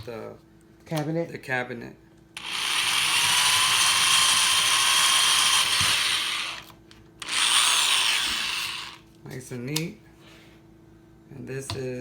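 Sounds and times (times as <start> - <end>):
power drill boring into wood: 2.4 - 9.0.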